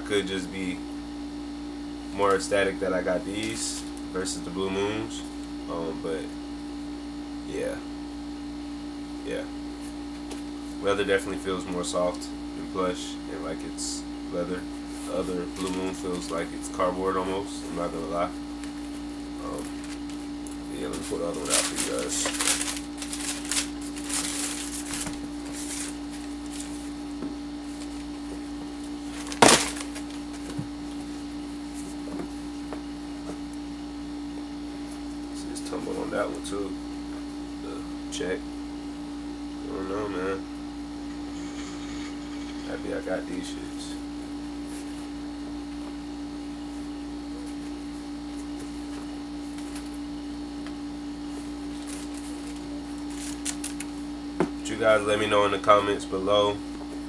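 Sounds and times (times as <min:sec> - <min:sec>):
low hum: 0:00.0 - 0:57.0
handling rustle: 0:18.3 - 0:33.6, 0:51.2 - 0:54.0.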